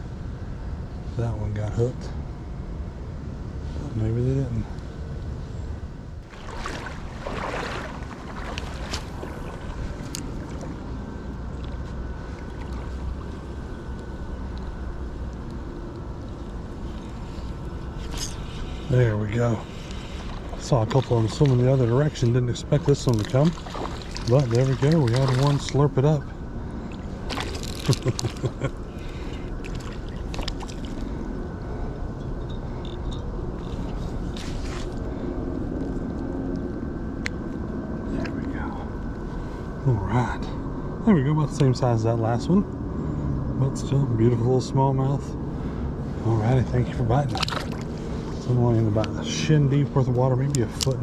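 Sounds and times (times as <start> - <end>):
wind rumble on microphone: 0.0 - 51.0
creek water flowing: 6.2 - 14.5, 16.7 - 31.6.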